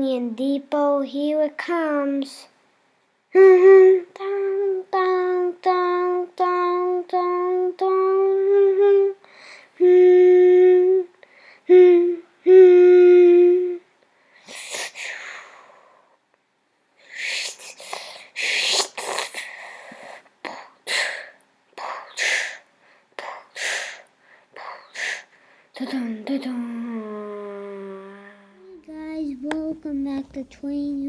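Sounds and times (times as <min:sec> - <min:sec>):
child humming: 0:03.4 - 0:09.2, 0:09.8 - 0:13.9, 0:24.6 - 0:31.0
breathy mouth puffs and hisses: 0:14.4 - 0:15.4, 0:17.1 - 0:22.6, 0:23.4 - 0:24.0.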